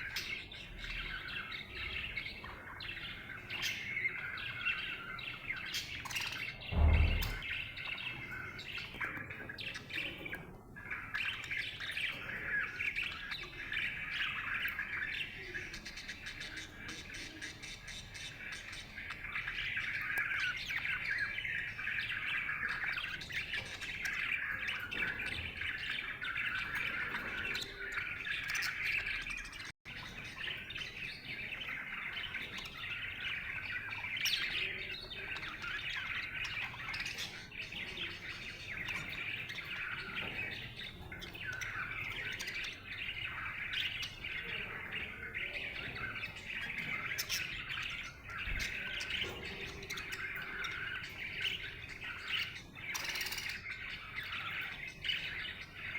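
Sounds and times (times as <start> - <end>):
budgerigar chirping: 30.1 - 55.9.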